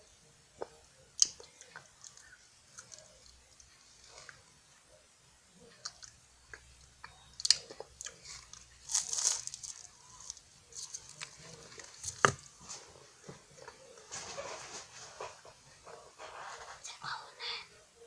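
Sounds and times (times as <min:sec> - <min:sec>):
crunching bites of pastry: 0:05.7 - 0:12.5.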